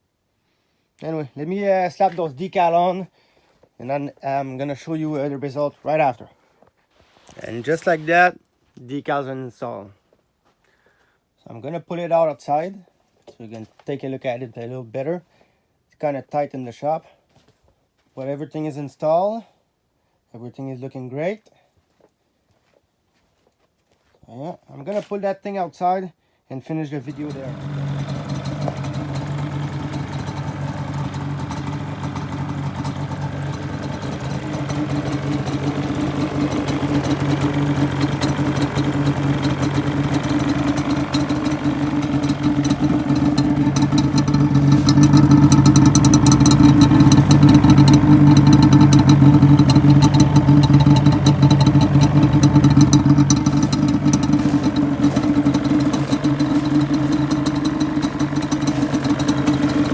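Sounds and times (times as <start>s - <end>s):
two-stroke engine idling: 7.0s - 8.2s, 27.1s - 59.9s.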